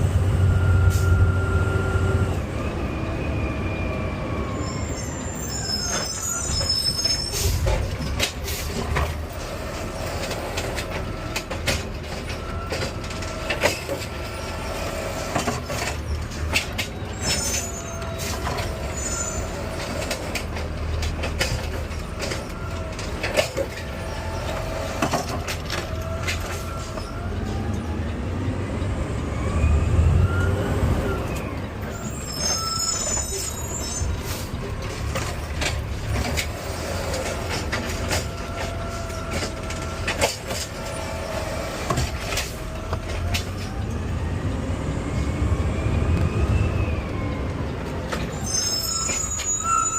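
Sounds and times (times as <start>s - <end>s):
truck engine rumble: 0.0s - 49.9s
high squeals: 3.0s - 8.2s, 13.4s - 20.4s, 29.5s - 35.5s, 48.3s - 49.9s.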